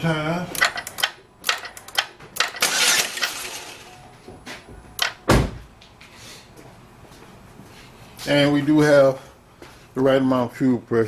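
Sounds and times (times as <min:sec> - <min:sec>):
heavy thump: 0:04.3 - 0:05.7.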